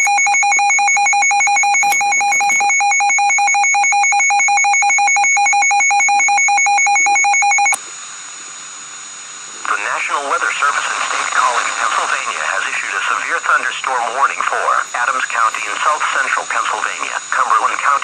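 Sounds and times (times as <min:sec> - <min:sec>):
faint radio hiss: 0:07.7 - 0:18.0.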